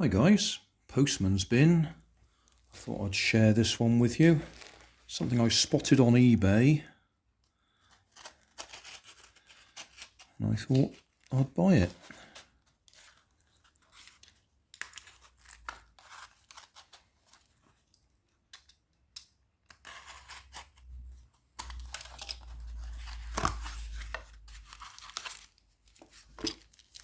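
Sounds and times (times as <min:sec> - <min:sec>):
packaging being torn and crinkled: 0:04.4 - 0:05.3, 0:07.7 - 0:18.7, 0:19.7 - 0:27.0.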